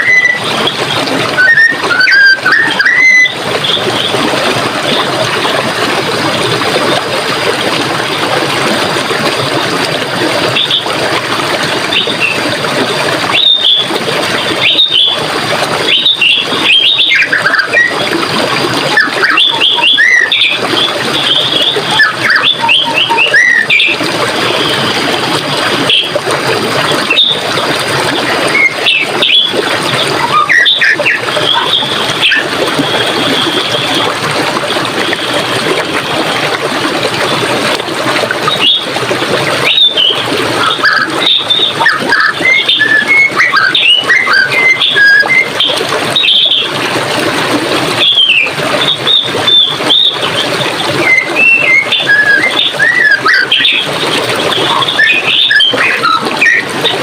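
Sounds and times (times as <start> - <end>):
birds chirping and calling: 0.0 - 4.1, 13.3 - 13.9, 14.6 - 15.2, 15.9 - 18.0, 19.0 - 24.8, 27.1 - 27.4, 28.3 - 32.4, 39.6 - 46.7, 48.0 - 54.0, 54.6 - 56.7
running water rushing: 0.0 - 57.0.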